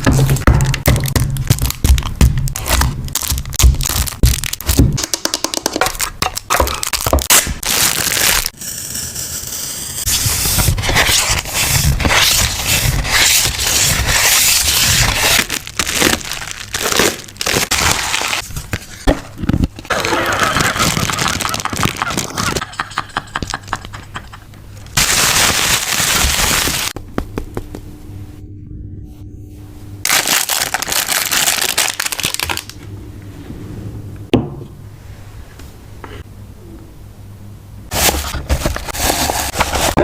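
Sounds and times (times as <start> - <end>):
paper crinkling and rustling: 10.4 - 22.7, 25.0 - 27.0, 30.1 - 32.8, 37.9 - 40.0.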